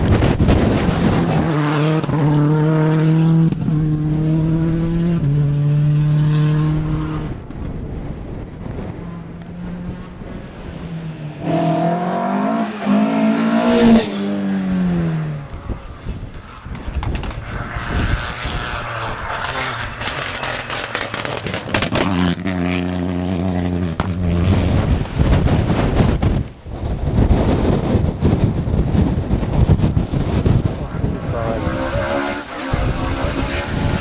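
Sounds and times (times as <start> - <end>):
rally car engine revving past: 0.6 - 7.5, 8.8 - 24.8, 30.9 - 34.0
rush of noise: 6.9 - 22.0.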